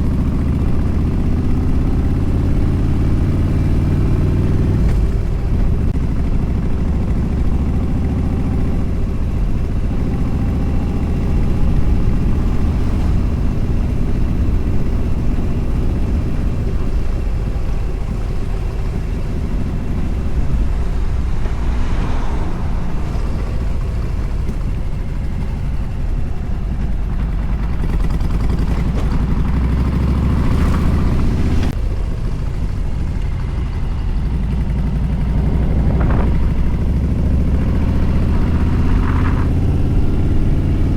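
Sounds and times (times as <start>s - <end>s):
motorcycle at highway speed: 0.0s - 40.9s
wind rushing over microphone: 8.8s - 26.5s.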